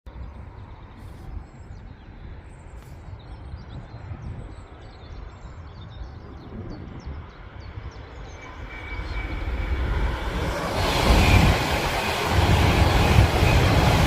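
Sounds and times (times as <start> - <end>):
small birds chirping: 0.1 - 10.0.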